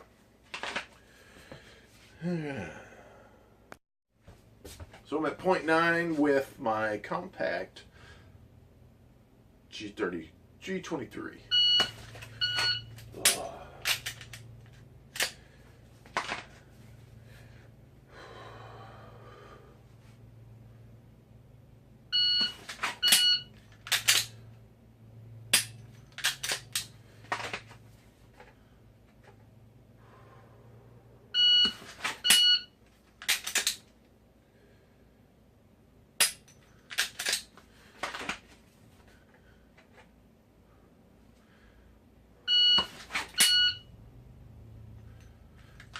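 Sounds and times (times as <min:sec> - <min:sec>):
shot timer beeps: 0:42.5 - 0:43.9.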